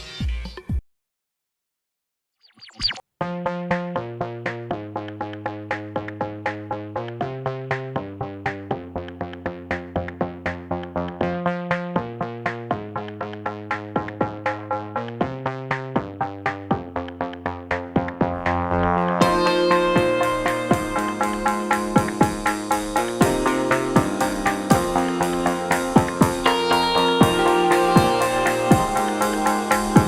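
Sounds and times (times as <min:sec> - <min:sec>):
electronic dance music: 0:16.4 - 0:30.0.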